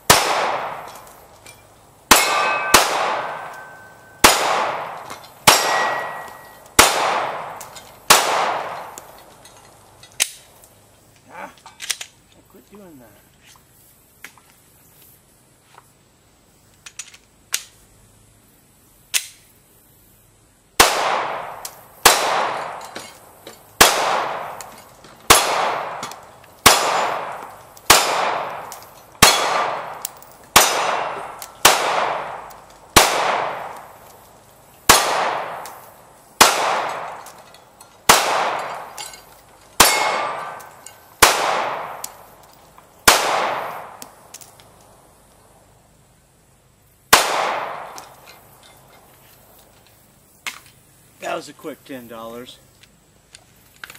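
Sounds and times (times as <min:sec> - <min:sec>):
pistol shots echoing: 0:00.0 - 0:01.0, 0:02.1 - 0:09.1, 0:20.8 - 0:23.0, 0:23.8 - 0:24.7, 0:25.3 - 0:34.0, 0:34.9 - 0:35.8, 0:36.4 - 0:37.4, 0:38.0 - 0:39.0, 0:39.8 - 0:42.2, 0:43.0 - 0:44.1, 0:47.1 - 0:48.1.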